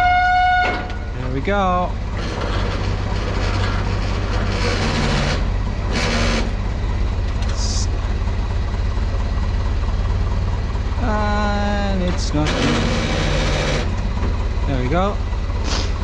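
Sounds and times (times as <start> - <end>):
heavy machine scraping: 0.0 - 7.9, 11.9 - 14.2, 15.6 - 16.0
forklift engine running: 0.0 - 16.0.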